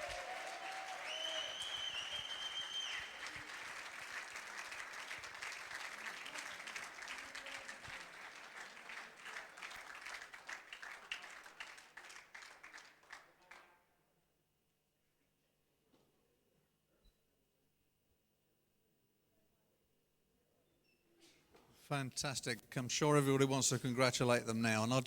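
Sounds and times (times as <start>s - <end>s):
audience applauding: 0.0s - 13.7s.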